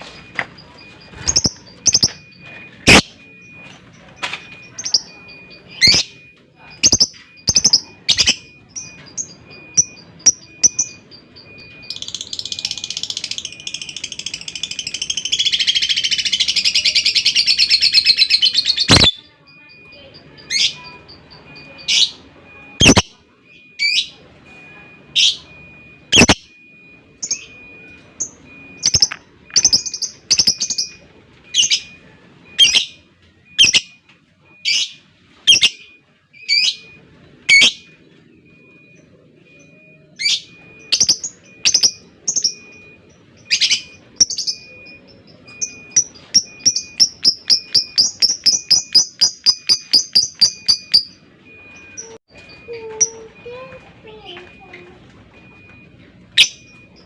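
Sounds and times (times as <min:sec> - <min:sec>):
lovebird sharp chirps: 0:02.8 - 0:03.2, 0:17.7 - 0:19.2, 0:22.8 - 0:23.1, 0:26.1 - 0:26.4.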